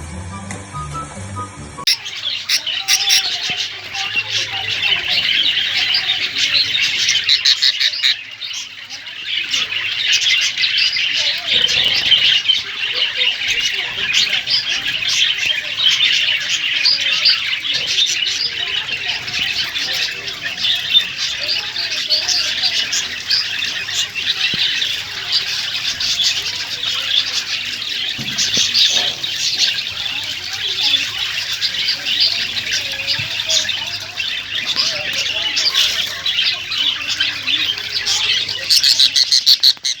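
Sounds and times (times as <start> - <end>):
many birds chirping: 1.8 - 40.0.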